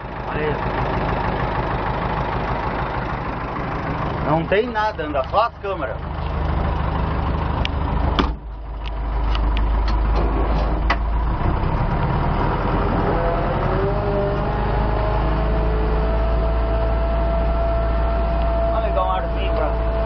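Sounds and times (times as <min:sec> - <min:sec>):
vehicle engine rumbling: 0:00.0 - 0:20.0
rising whine: 0:09.9 - 0:20.0.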